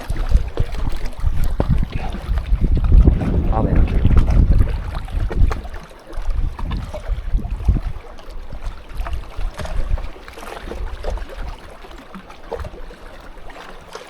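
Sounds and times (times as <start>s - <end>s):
low rumble: 0.0s - 5.7s
wind buffeting microphone: 0.0s - 13.6s.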